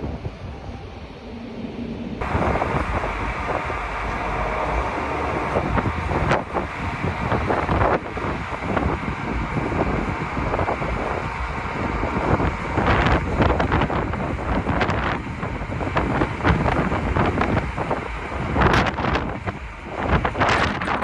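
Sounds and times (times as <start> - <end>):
strong wind buffeting microphone: 0.0 - 21.0.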